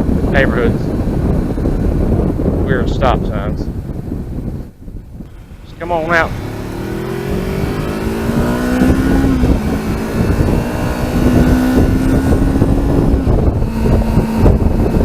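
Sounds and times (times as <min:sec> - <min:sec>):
wind and road noise: 0:00.0 - 0:15.0
motorcycle engine accelerating: 0:05.2 - 0:15.0.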